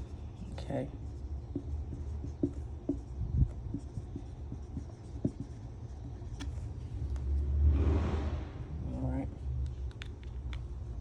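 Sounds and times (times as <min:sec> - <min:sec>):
pen scratching on paper: 0:00.8 - 0:06.6
low rumble: 0:07.2 - 0:08.9.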